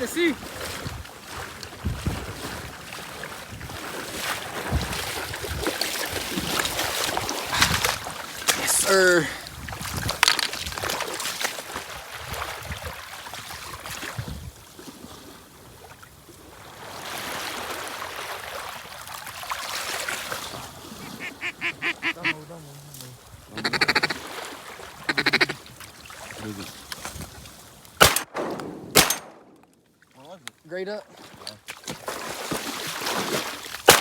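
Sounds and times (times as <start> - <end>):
ducks quacking: 20.9 - 22.6, 23.5 - 24.4, 25.0 - 25.6.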